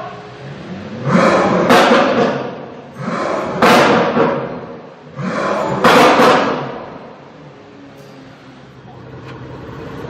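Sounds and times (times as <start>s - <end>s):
car engine revving: 0.5s - 7.7s.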